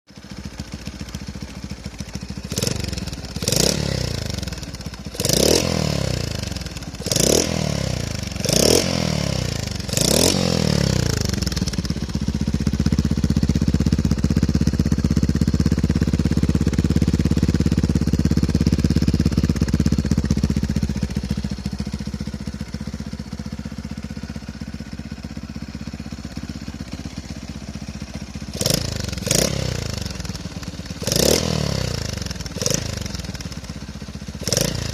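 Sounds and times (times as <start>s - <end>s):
two-stroke engine revving: 0.2s - 22.8s, 28.0s - 34.9s.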